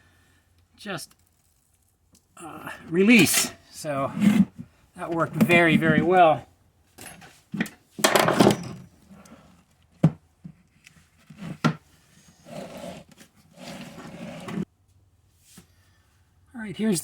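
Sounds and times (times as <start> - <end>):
scraping and rubbing: 3.1 - 6.4, 12.3 - 14.7.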